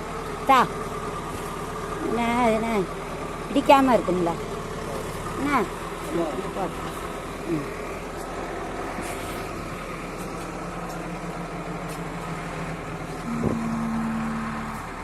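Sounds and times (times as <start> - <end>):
engine humming: 0.0 - 15.0
higher steady hum: 12.1 - 15.0.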